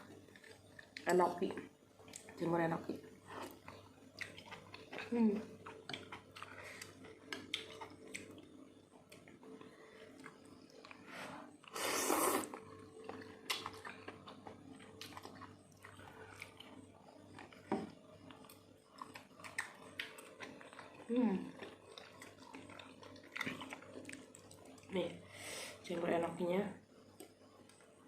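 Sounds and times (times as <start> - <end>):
person chewing: 3.2 - 24.9
loud noisy mouth sound: 11.8 - 12.5.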